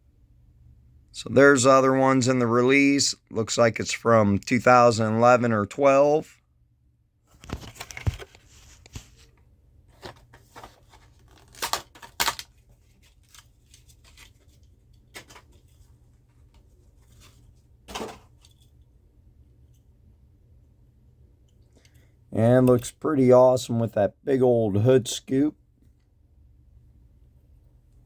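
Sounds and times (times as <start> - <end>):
toy car handling clicks and rustles: 10.0 - 15.8.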